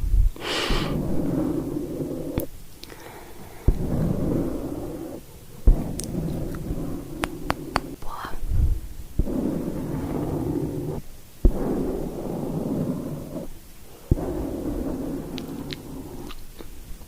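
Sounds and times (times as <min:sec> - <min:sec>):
rubbing on microphone: 0:03.7 - 0:13.5.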